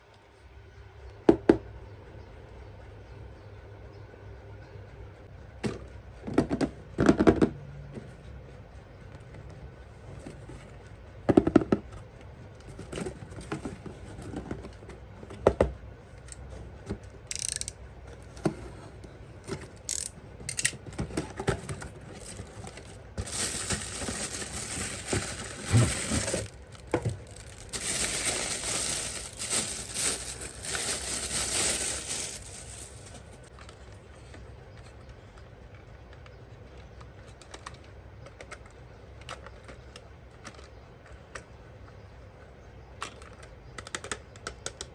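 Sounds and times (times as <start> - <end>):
packaging clicks and knocks: 19.5 - 33.4
packaging rustling and tearing: 19.9 - 33.5.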